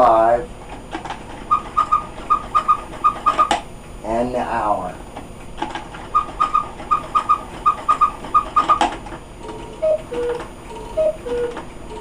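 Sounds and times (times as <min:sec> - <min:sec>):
whistled quail call: 0:01.5 - 0:03.6, 0:06.2 - 0:08.8, 0:09.7 - 0:12.0
two-note cuckoo call: 0:01.8 - 0:03.6, 0:06.5 - 0:08.8, 0:09.4 - 0:12.0.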